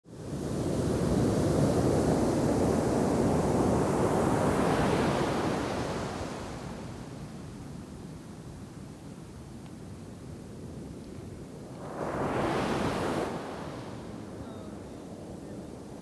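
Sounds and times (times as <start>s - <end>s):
ocean waves crashing on beach: 11.7s - 15.3s.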